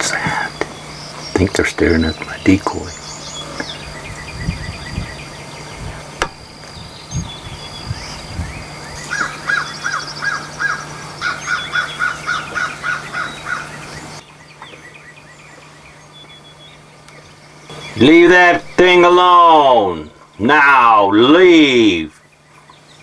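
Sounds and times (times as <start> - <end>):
repeated short bird calls: 0.0 - 19.0
birds chirping and trilling: 0.0 - 23.0
dull low thumps: 2.2 - 9.1.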